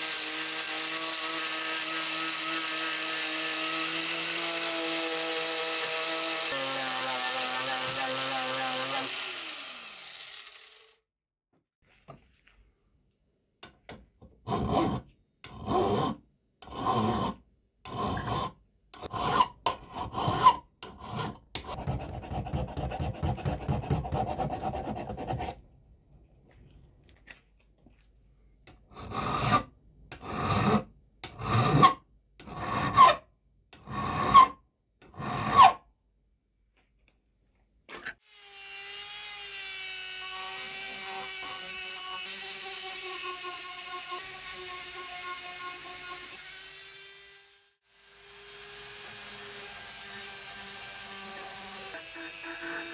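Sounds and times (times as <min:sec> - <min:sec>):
hand file scraping steel: 0:00.0 - 0:10.8, 0:14.4 - 0:25.6, 0:28.9 - 0:33.2, 0:33.8 - 0:35.8.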